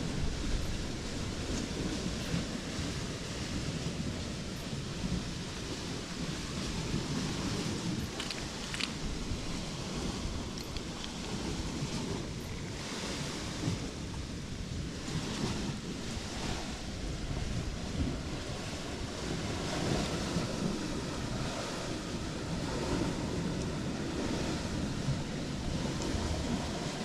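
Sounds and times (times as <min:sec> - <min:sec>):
wind buffeting microphone: 0:00.0 - 0:27.0
water washing: 0:05.4 - 0:12.0.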